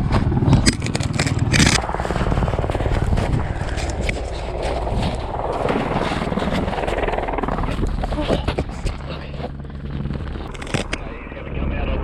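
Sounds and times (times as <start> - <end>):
helicopter rotor chopping: 0.0 - 12.0.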